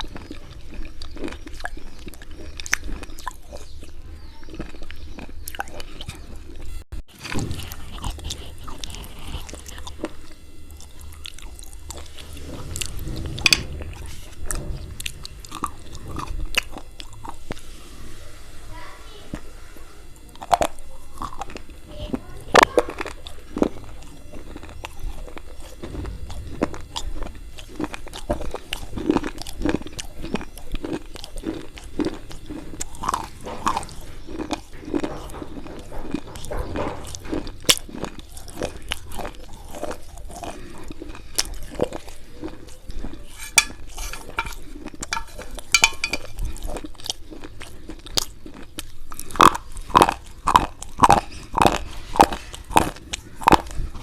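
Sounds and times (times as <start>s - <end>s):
gritty chalk crunching: 42.2s - 47.6s.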